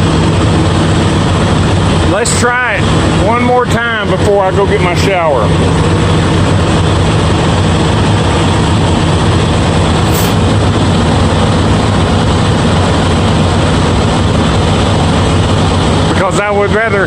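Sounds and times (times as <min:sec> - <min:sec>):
truck engine idling: 0:00.0 - 0:17.0
short high hiss: 0:10.0 - 0:10.4.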